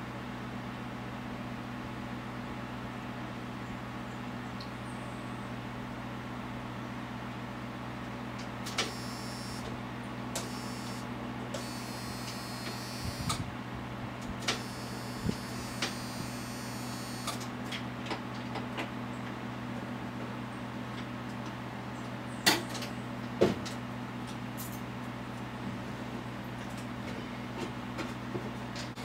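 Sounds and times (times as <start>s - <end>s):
short electrical buzzes: 8.7s - 9.7s, 10.4s - 13.5s, 14.4s - 17.4s.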